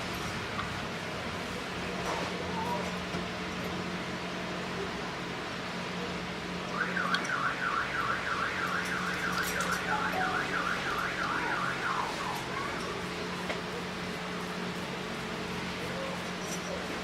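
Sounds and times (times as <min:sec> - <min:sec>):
electronic warbling alarm tone: 0:06.8 - 0:13.0.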